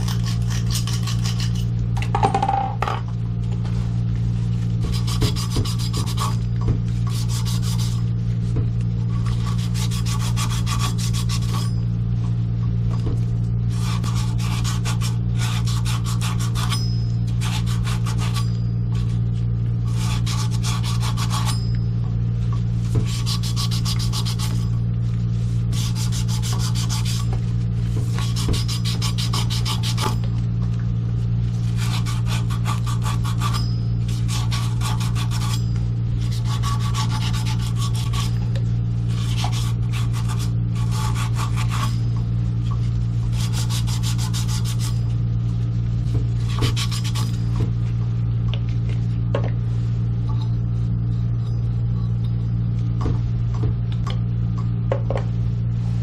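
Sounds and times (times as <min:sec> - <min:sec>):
rasping sanding strokes: 0:00.0 - 0:01.7, 0:04.8 - 0:06.4, 0:07.1 - 0:08.0, 0:09.1 - 0:11.7, 0:13.7 - 0:18.5, 0:19.9 - 0:21.6, 0:23.0 - 0:24.7, 0:25.4 - 0:27.3, 0:28.0 - 0:30.2, 0:31.7 - 0:35.6, 0:36.2 - 0:38.4, 0:39.1 - 0:42.0, 0:43.3 - 0:45.0
steady low hum: 0:00.0 - 0:56.0.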